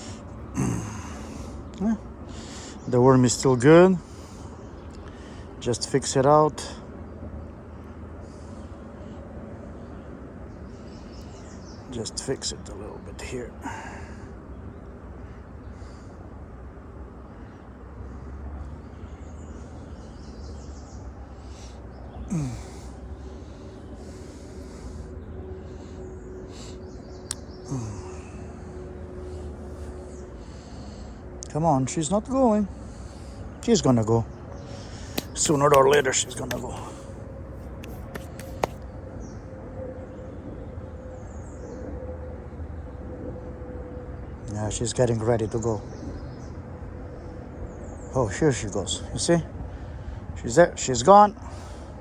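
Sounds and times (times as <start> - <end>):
sharp click: 35.2 - 37.0, 37.6 - 38.8.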